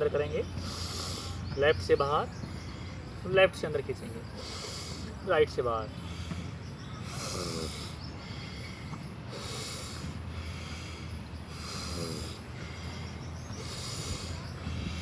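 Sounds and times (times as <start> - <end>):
steady low hum: 0.0 - 15.0
forceful nostril breathing: 0.5 - 1.5, 4.2 - 5.2, 5.9 - 15.0.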